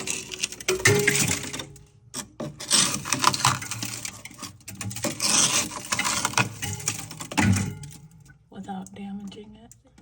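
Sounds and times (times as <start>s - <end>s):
wooden spoon scraping ice: 0.0s - 1.6s, 2.2s - 7.4s.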